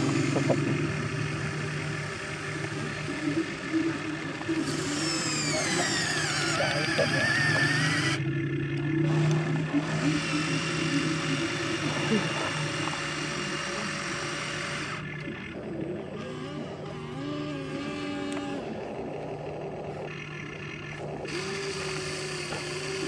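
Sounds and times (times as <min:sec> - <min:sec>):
excavator digging soil: 0:00.0 - 0:08.2, 0:09.0 - 0:19.1
excavator motor humming: 0:00.0 - 0:23.0
machine whine: 0:00.0 - 0:23.0.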